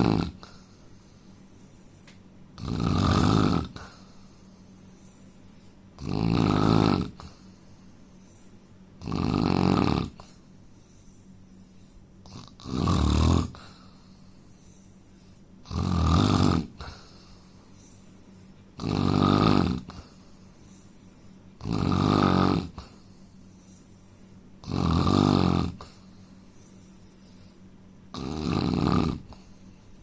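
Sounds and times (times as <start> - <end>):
man snoring: 0.0 - 0.8, 2.6 - 4.2, 6.0 - 7.5, 9.0 - 10.4, 12.2 - 14.8, 15.6 - 17.4, 18.8 - 20.2, 21.6 - 23.1, 24.6 - 26.0, 28.1 - 29.5.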